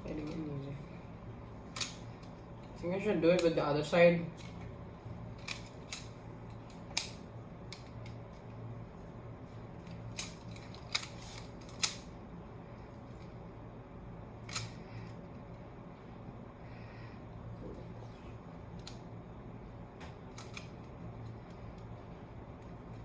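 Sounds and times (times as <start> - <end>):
low hum: 4.1 - 23.0.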